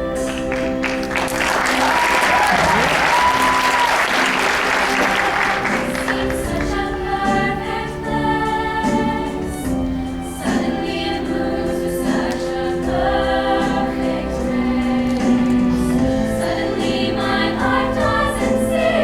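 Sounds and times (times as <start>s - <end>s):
choir singing held chords: 0.0s - 19.0s
applause: 0.2s - 6.8s.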